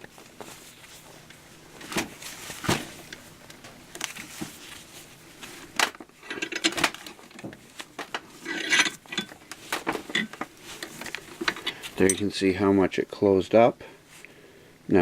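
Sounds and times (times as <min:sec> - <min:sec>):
steel chain clinking: 0:08.4 - 0:09.3.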